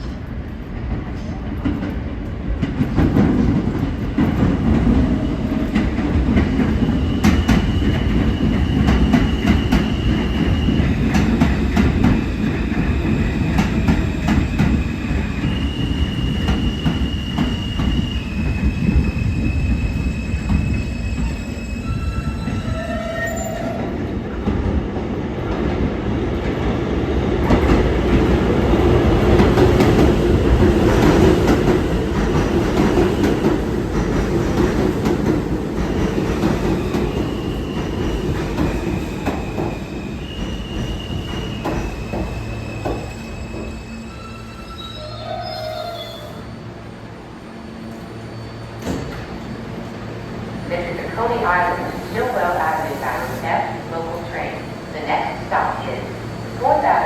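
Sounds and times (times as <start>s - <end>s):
train wheel rumble on rails: 0.0s - 44.8s
high steady train tones: 0.0s - 57.0s.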